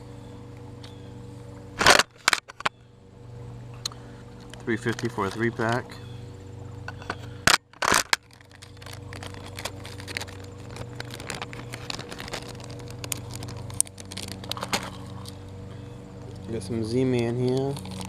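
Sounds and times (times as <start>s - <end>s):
steady low hum: 0.0s - 18.0s
small clicks and rustles: 3.8s - 5.9s, 6.9s - 15.5s, 17.1s - 18.0s
plastic packaging crinkling: 4.4s - 5.8s, 7.6s - 15.4s, 17.3s - 18.0s.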